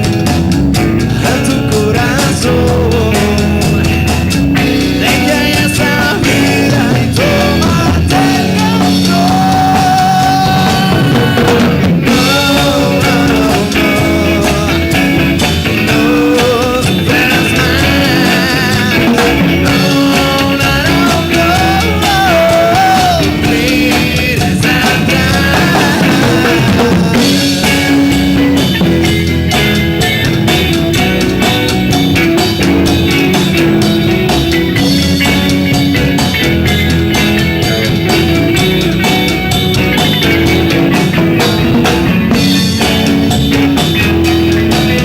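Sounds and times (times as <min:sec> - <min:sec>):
bending guitar melody: 0:00.0 - 0:45.0
live rock band playing: 0:00.0 - 0:45.0.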